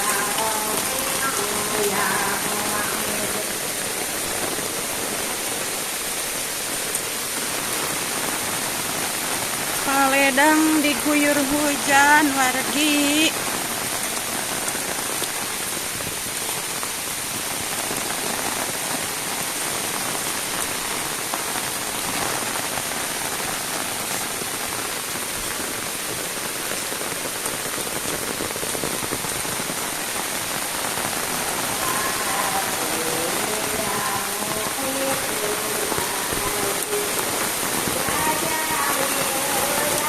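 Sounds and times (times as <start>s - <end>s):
heavy rain pattering: 0.0s - 40.0s.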